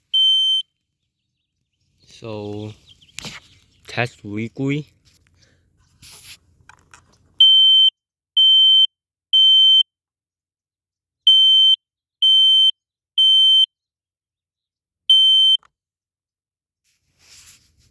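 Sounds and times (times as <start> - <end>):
smoke detector alarm beeps: 0.1 - 0.7, 7.4 - 9.9, 11.3 - 13.7, 15.1 - 15.6.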